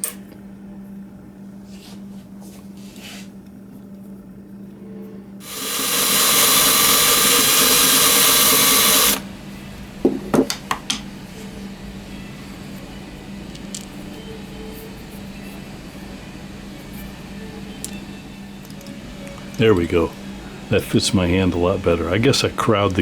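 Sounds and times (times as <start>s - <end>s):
power drill spinning: 5.4s - 9.3s.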